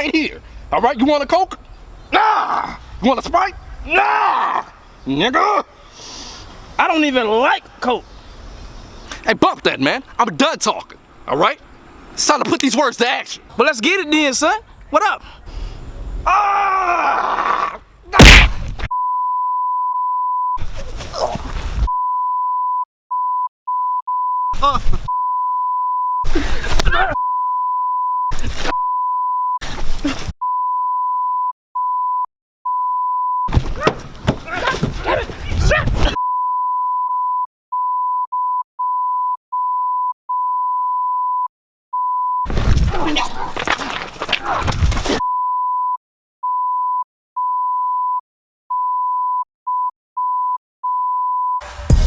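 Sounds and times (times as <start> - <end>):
high-pitched censor bleep: 18.9 - 20.6, 22.0 - 26.2, 27.2 - 29.6, 30.4 - 33.5, 36.2 - 42.5, 45.2 - 51.7
loud voices: 33.5 - 36.2.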